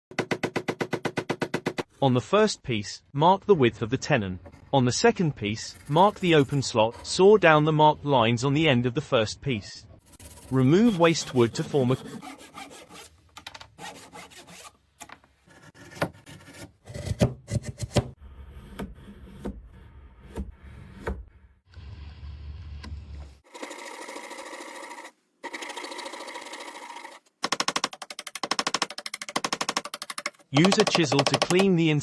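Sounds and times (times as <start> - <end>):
tool scraping on wood: 10.0 - 14.8
hand tool knocking on wood: 30.6 - 31.7.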